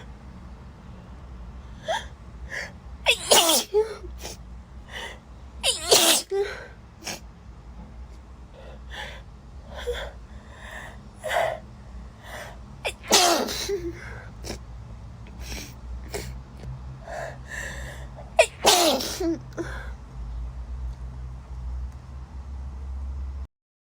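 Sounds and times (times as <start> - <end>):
woman sneezing: 3.1 - 4.4, 5.6 - 6.4, 12.9 - 14.0, 18.4 - 19.4
breathy gasps: 17.0 - 18.3.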